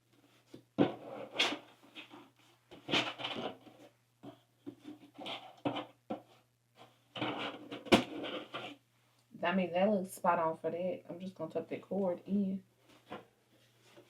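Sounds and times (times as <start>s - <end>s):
packaging scraping and rubbing: 0.8s - 3.9s, 4.7s - 6.0s, 6.8s - 8.8s.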